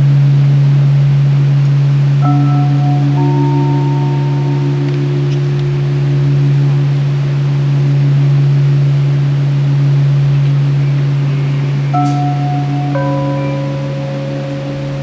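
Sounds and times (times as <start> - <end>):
low musical drone: 0.0 - 15.0
higher held notes: 2.2 - 15.0
steady hiss: 2.6 - 15.0.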